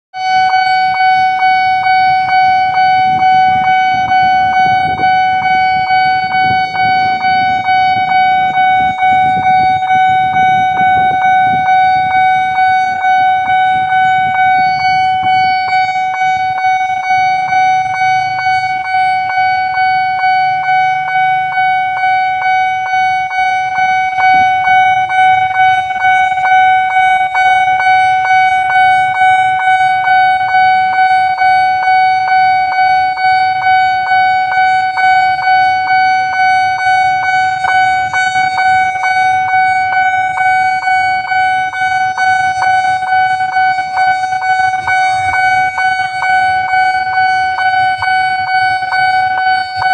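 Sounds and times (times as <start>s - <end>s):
level crossing alarm tone: 0.1s - 49.9s.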